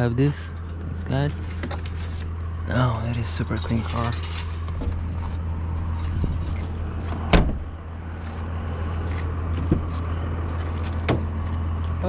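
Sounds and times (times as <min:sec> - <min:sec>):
steady low hum: 0:00.0 - 0:12.0
car door clunking open: 0:06.0 - 0:07.8, 0:09.5 - 0:10.0, 0:10.7 - 0:11.4.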